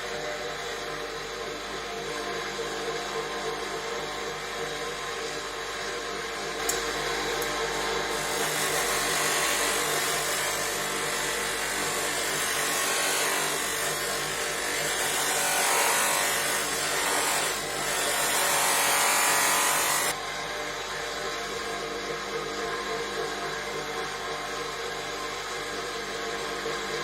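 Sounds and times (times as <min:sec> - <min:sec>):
polishing machine motor running: 0:00.0 - 0:26.9.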